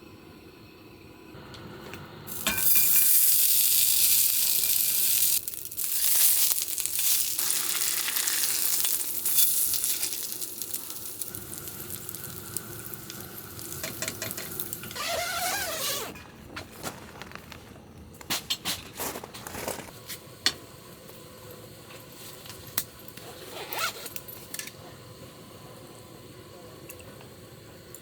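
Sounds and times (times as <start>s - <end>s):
food sizzling in a hot pan: 2.3s - 15.3s.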